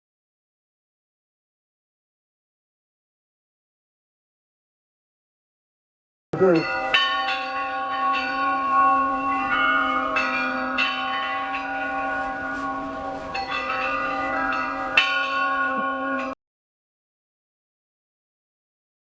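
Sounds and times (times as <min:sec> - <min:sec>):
eerie bell-like tones: 0:06.4 - 0:16.4.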